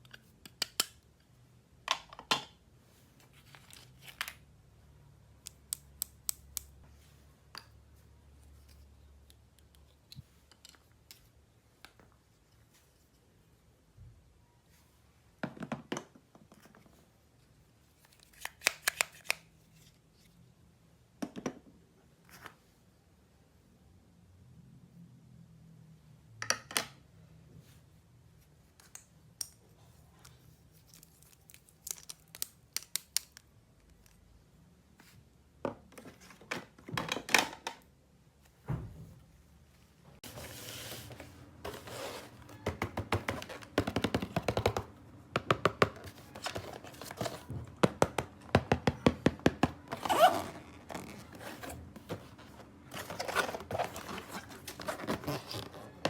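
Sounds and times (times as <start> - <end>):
packaging rustling: 40.2 - 42.6, 49.8 - 56.0.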